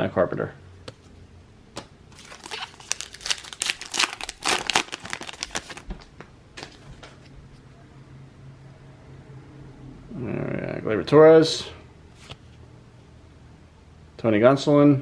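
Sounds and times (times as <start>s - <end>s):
foil wrapper crinkling: 2.2s - 6.8s.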